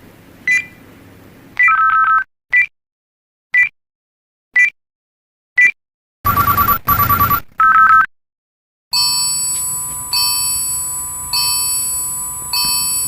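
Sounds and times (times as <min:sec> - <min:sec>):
pulsing electronic beeps: 0:06.3 - 0:07.4
bright chime tone: 0:09.0 - 0:13.0.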